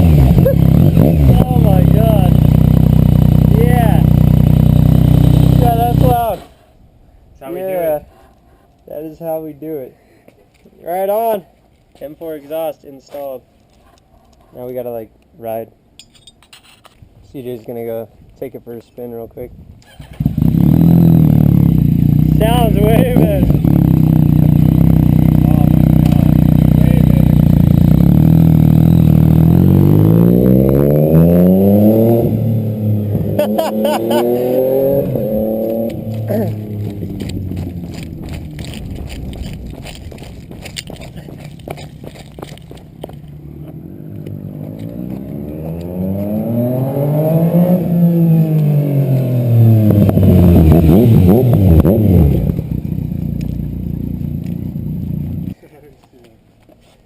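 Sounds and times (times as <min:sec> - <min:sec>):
motorcycle engine revving: 0:00.0 - 0:06.5, 0:19.8 - 0:55.6.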